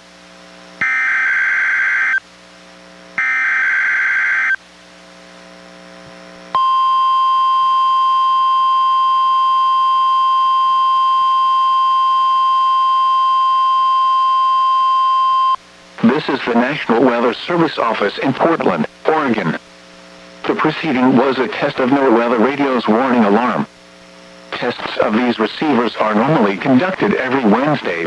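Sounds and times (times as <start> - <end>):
steady alarm tone: 0.8 - 2.2, 3.2 - 4.6, 6.6 - 15.6.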